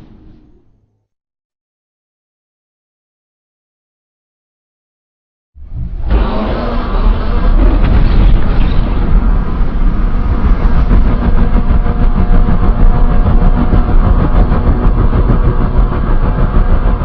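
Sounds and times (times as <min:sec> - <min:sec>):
deep monster rumble: 0:05.6 - 0:17.0.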